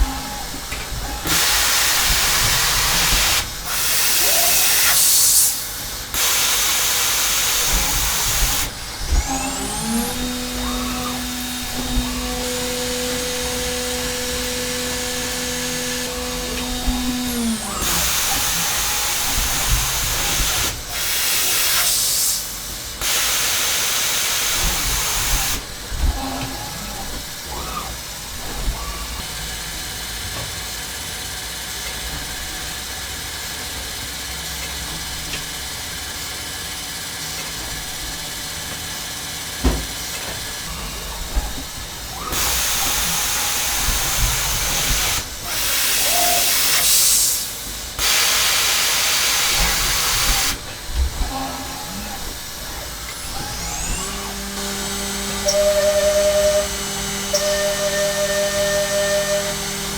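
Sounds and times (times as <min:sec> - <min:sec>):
milling machine spindle whine: 0:00.0 - 0:59.9
steady machine hum: 0:07.0 - 0:21.6, 0:37.6 - 0:59.9.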